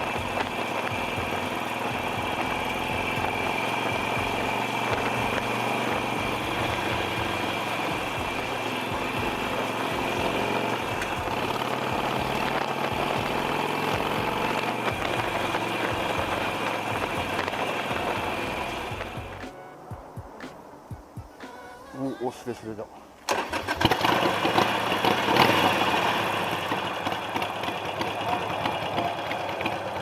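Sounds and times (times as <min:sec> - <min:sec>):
motorcycle engine running: 0:00.0 - 0:21.4, 0:23.8 - 0:30.0.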